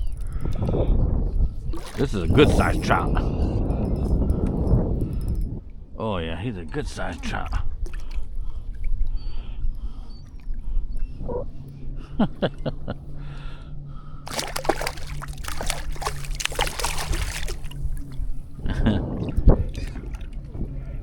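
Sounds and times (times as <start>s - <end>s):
fish splashing in water: 1.7s - 2.4s, 14.3s - 18.6s.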